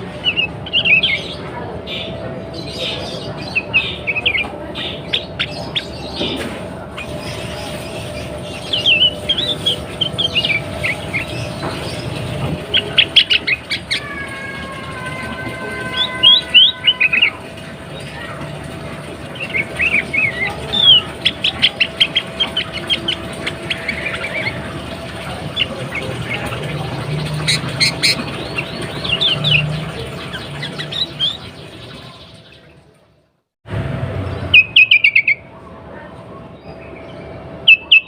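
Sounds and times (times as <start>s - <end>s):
bird chirping: 0.0s - 14.5s, 19.3s - 32.7s, 34.3s - 35.4s, 36.7s - 38.0s
steady background hum: 0.0s - 38.0s.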